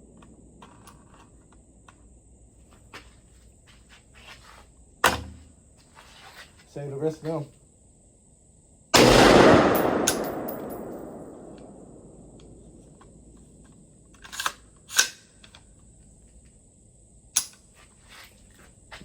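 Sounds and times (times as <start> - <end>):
rifle shot: 9.0 - 12.8.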